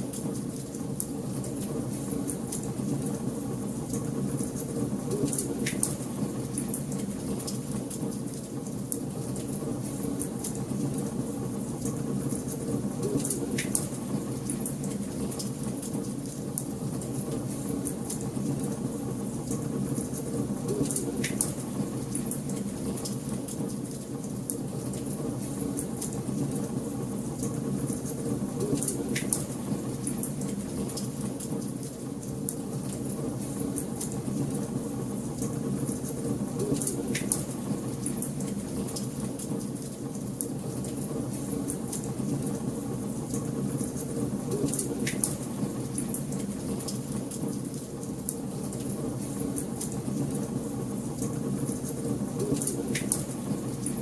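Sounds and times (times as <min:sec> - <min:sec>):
wood fire crackling: 0:13.2 - 0:54.0.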